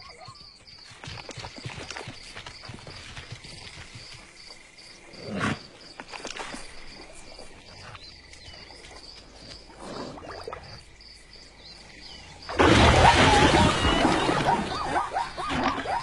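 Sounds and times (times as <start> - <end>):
insects chirping: 0.0 - 16.0.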